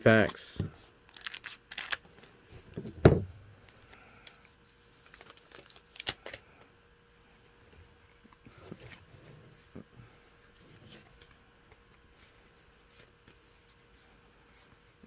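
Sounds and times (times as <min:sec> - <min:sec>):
wrapper tearing and crinkling: 0:01.1 - 0:02.1, 0:05.1 - 0:06.4
loud thump: 0:02.9 - 0:03.6.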